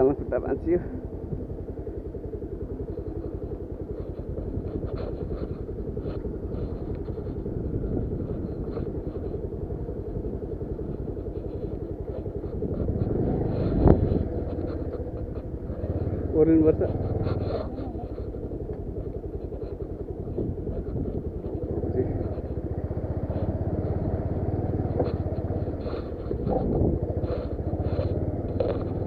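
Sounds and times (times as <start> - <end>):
motorcycle engine running: 0.0 - 29.0.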